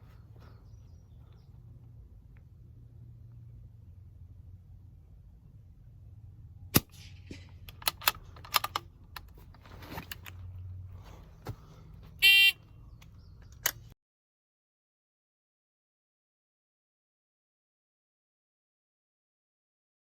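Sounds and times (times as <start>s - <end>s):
sharp clicks and knocks: 6.8s - 10.4s.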